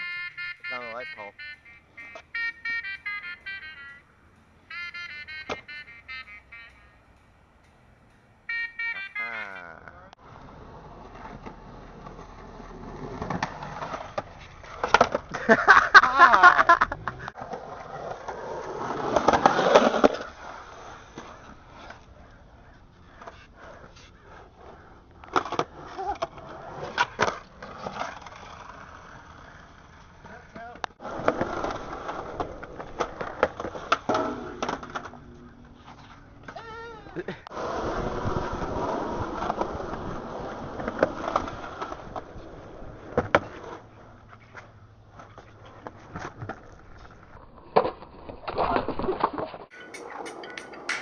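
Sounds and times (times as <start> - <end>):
skateboard rolling: 1.4 - 4.0, 4.6 - 6.7, 10.2 - 50.9
skateboard deck clacks: 4.7 - 6.8, 21.1 - 36.6, 39.2 - 48.0, 49.7 - 51.0.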